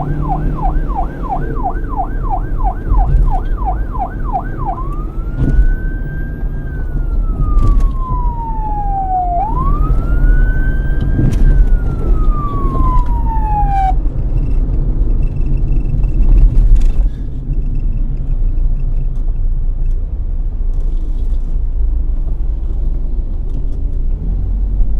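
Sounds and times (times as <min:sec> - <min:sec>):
police siren wailing: 0:00.0 - 0:14.1
low vehicle rumble: 0:00.0 - 0:24.9.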